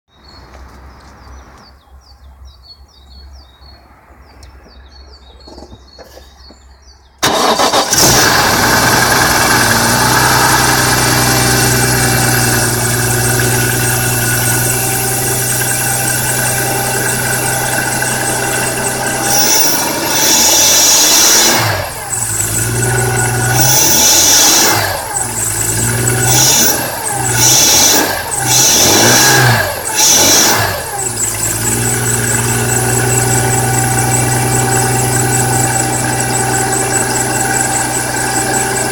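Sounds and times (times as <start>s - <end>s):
car engine revving: 7.2s - 38.9s
car engine starting and idling: 7.2s - 38.9s
high scraping chirping noise: 12.3s - 38.9s.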